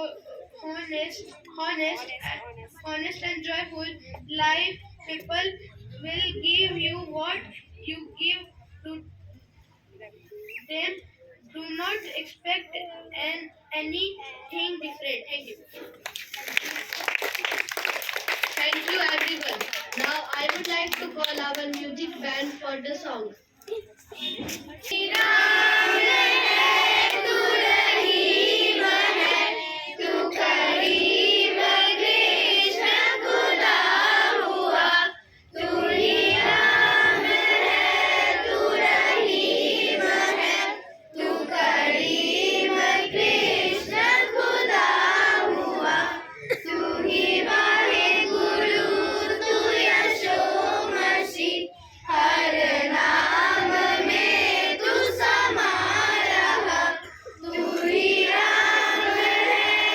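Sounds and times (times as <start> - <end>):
children singing: 24.9 - 59.9.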